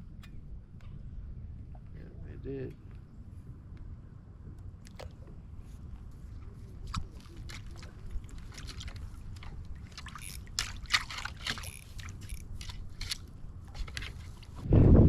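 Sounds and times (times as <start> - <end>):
low steady rumble: 0.0 - 15.0
water sloshing and splashing: 4.9 - 14.7.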